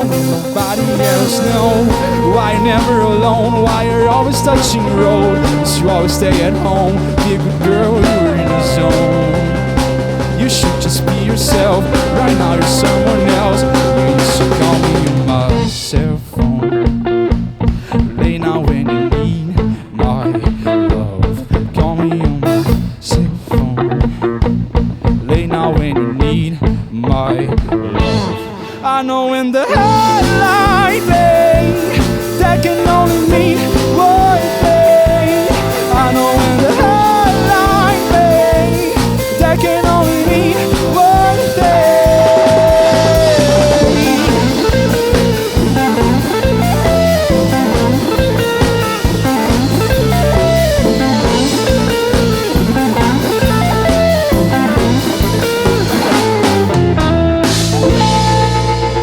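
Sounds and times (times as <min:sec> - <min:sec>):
lead electric guitar: 0:00.0 - 0:59.0
rock band playing: 0:00.0 - 0:59.0.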